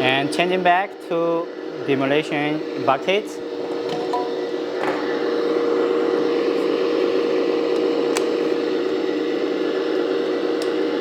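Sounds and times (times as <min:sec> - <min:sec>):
hydraulic pump whining: 0:02.3 - 0:11.0.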